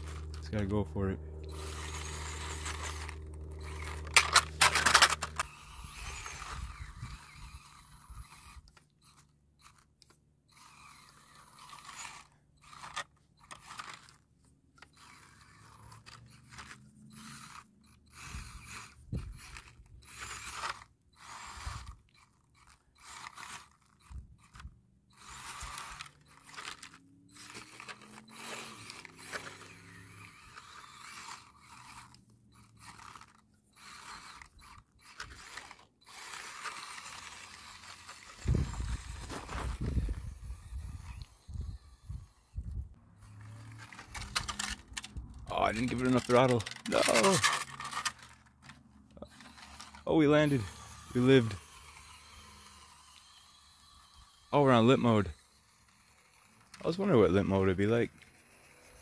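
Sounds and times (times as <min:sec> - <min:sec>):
toy car motor whining: 0:00.0 - 0:59.0
tyres crunching over ground: 0:32.8 - 0:41.8.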